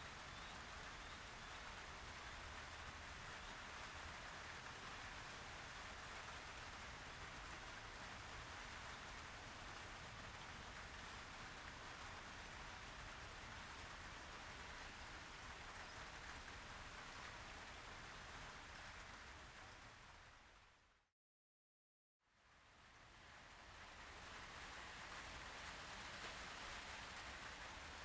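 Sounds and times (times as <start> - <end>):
faint steady hiss: 0.0 - 20.6, 22.4 - 28.0.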